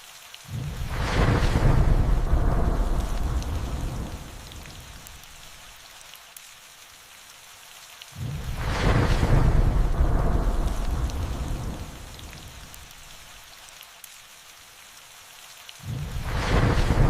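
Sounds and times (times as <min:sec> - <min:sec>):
steady rain: 0:00.0 - 0:17.0
raindrop ticks: 0:00.1 - 0:14.6
thunder rumbling: 0:00.5 - 0:05.6, 0:08.2 - 0:13.2, 0:15.9 - 0:17.0.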